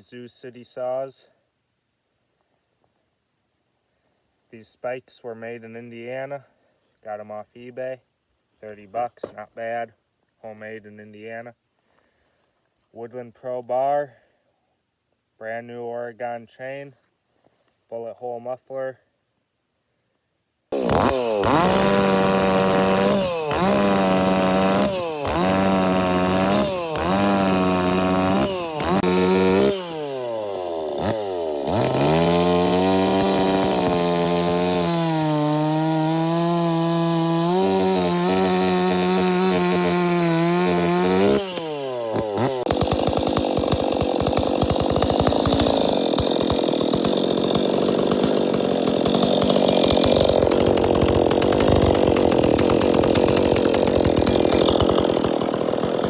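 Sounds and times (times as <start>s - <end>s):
chainsaw cutting wood: 20.7s - 56.0s
chainsaw revving: 20.7s - 56.0s.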